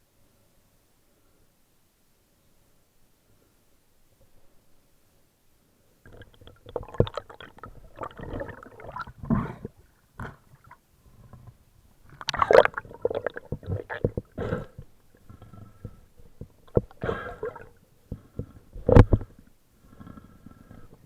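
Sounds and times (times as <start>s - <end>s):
water gurgling and sloshing: 6.1s - 19.4s.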